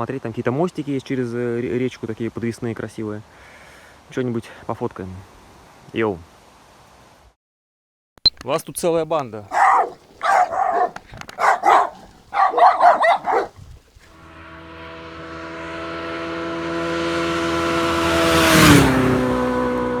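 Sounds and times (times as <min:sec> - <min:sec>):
dog barking: 0:09.5 - 0:13.6.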